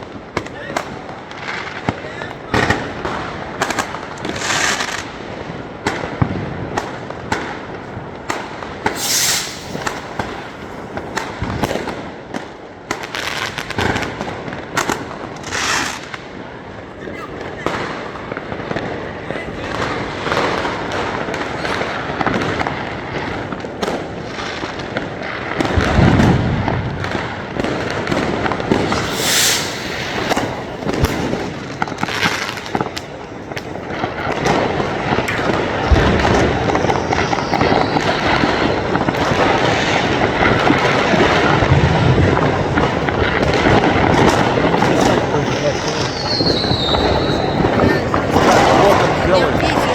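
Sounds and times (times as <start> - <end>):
firecrackers crackling: 0.0 - 49.9
deep firework booms: 8.2 - 12.1, 25.6 - 49.9
short hiss: 8.9 - 10.9, 28.8 - 31.1.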